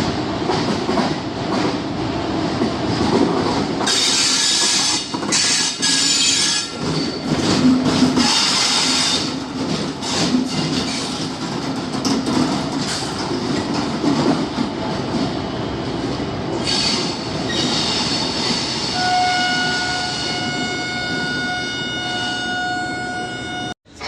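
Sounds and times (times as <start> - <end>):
locomotive rumble and wheel clatter: 0.0 - 18.9
locomotive horn blast: 18.9 - 23.8.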